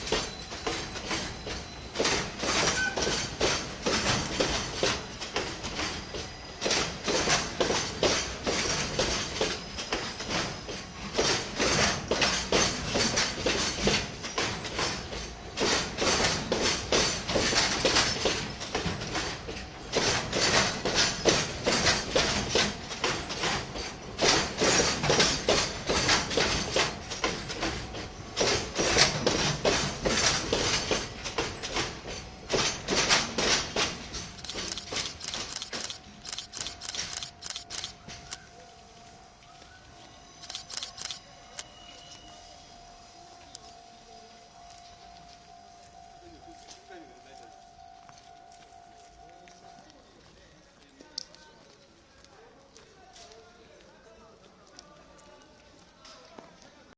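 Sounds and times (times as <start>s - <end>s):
train wheels clattering over rail joints: 0.0s - 38.4s.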